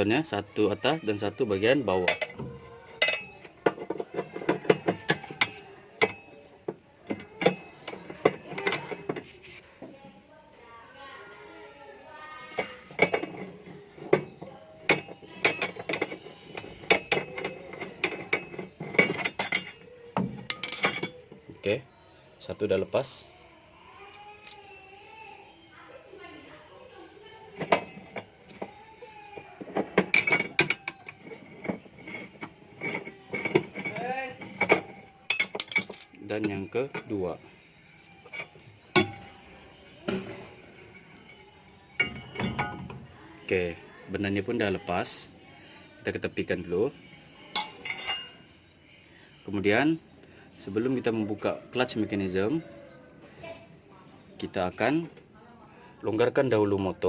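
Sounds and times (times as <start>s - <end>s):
spanner clinking on metal: 2.0s - 6.4s, 12.5s - 21.3s, 27.6s - 28.7s, 29.8s - 37.1s, 38.0s - 39.4s, 40.1s - 43.1s, 47.5s - 48.4s.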